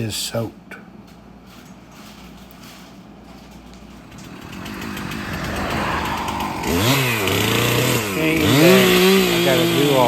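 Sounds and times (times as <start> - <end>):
road traffic noise: 3.0 - 10.0
chainsaw revving: 4.0 - 10.0.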